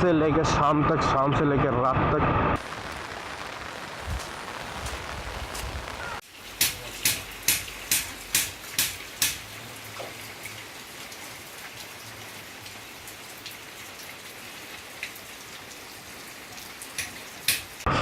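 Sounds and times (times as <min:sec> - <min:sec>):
rain hiss: 0:02.6 - 0:17.9
water drips on a surface: 0:03.8 - 0:17.8.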